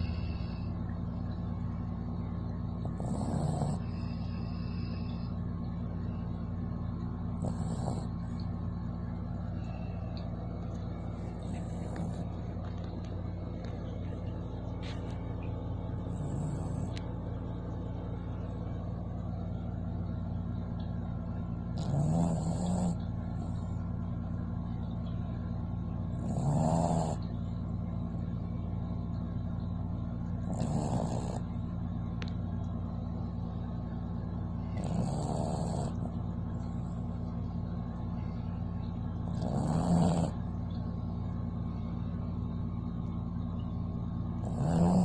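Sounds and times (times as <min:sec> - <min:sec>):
dog snoring: 0:00.0 - 0:00.8, 0:02.7 - 0:05.4, 0:07.3 - 0:08.4, 0:09.5 - 0:12.9, 0:15.8 - 0:17.1, 0:21.7 - 0:23.8, 0:26.1 - 0:27.5, 0:30.4 - 0:32.3, 0:34.6 - 0:37.3, 0:39.2 - 0:40.6, 0:44.4 - 0:45.0
steady low hum: 0:00.0 - 0:45.0.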